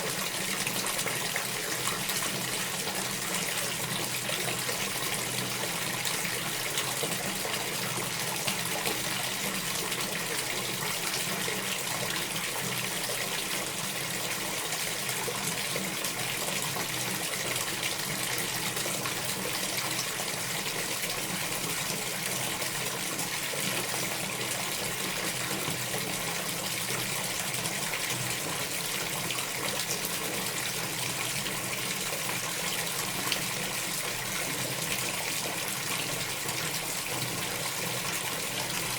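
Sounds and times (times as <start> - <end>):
water running into bathtub: 0.0 - 38.9.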